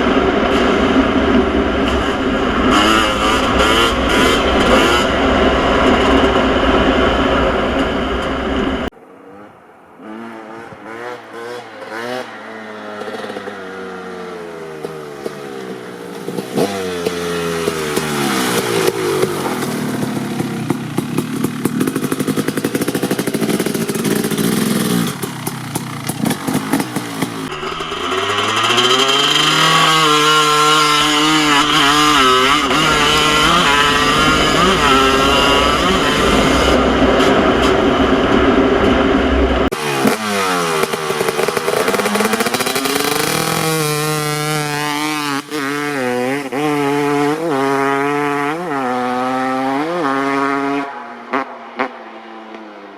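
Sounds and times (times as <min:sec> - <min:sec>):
two-stroke engine revving: 0:00.0 - 0:07.2, 0:10.0 - 0:52.9
engine popping off throttle: 0:14.5 - 0:47.1.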